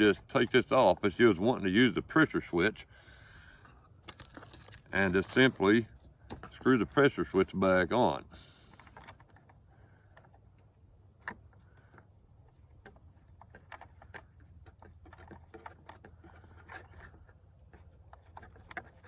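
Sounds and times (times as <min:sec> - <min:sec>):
flashlight being handled: 0:03.6 - 0:07.2.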